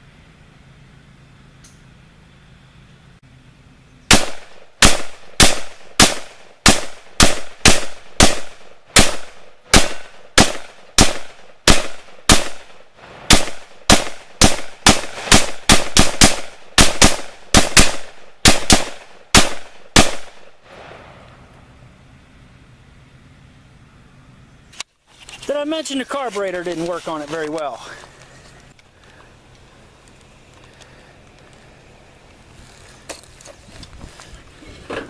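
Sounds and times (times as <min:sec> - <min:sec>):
rifle shots with echo: 0:04.1 - 0:21.2.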